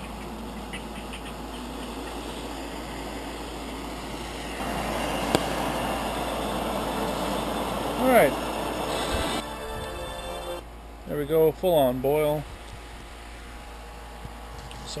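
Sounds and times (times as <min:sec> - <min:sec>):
gas stove burning: 0:00.0 - 0:10.6.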